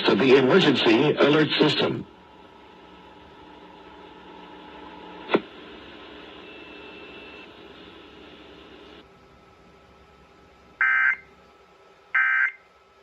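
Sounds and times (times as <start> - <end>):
radio static hiss: 0.0 - 9.0
faint hum tones: 0.0 - 13.0.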